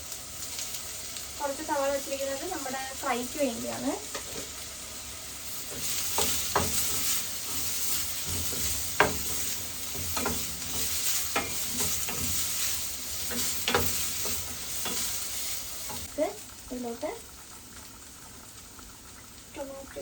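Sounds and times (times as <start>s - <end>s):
onions sizzling in oil: 0.0s - 20.0s
spoon scraping and tapping pan: 5.7s - 16.1s.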